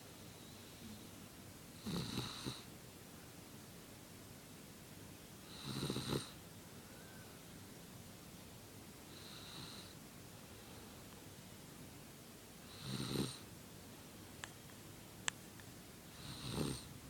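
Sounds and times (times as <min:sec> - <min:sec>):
baby snoring: 0:01.8 - 0:02.7, 0:05.5 - 0:06.4, 0:12.7 - 0:13.5, 0:16.2 - 0:16.9.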